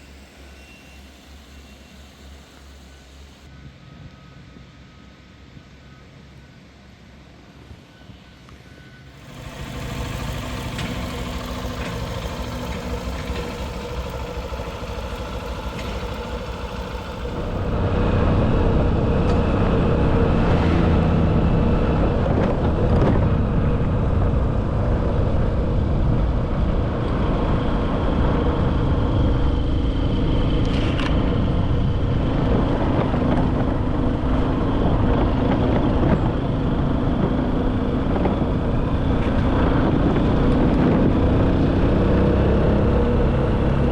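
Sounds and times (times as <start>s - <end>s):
motor engine running: 9.1s - 43.9s.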